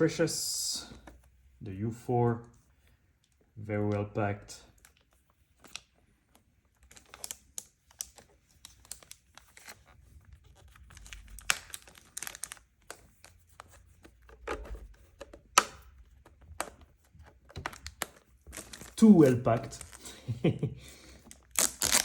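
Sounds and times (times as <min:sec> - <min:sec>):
packaging rustling and tearing: 0:06.6 - 0:20.3, 0:21.1 - 0:22.0.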